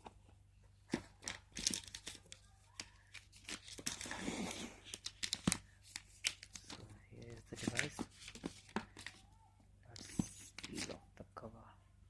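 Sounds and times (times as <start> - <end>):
packaging rustling and crinkling: 0.9 - 9.2.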